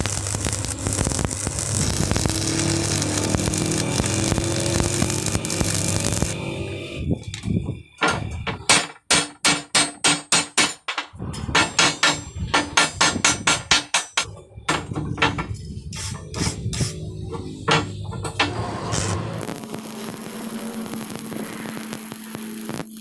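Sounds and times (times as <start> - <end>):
hammer strikes: 8.0 - 18.6.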